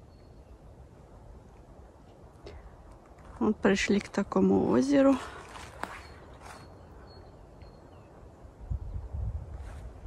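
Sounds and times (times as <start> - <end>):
faint high-pitched bird notes: 0.0 - 0.9, 5.8 - 9.1
soft rustle: 1.5 - 7.1, 9.5 - 10.0.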